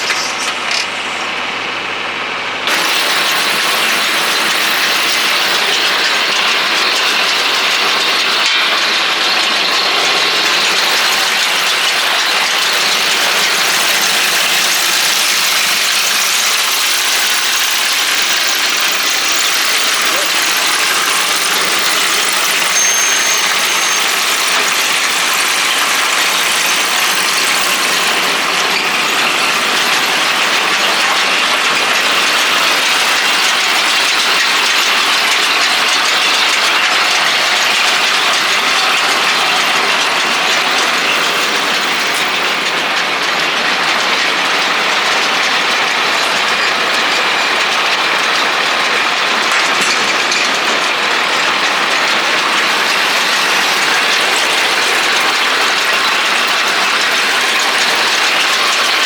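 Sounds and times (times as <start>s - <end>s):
round baler mechanical clatter: 0.0s - 59.0s.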